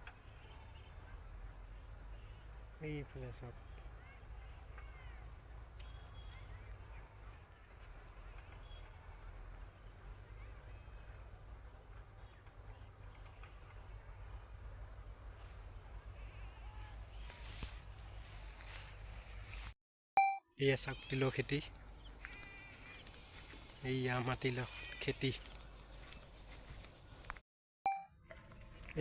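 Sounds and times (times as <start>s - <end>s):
insects trilling: 7.8s - 19.7s, 20.6s - 27.4s.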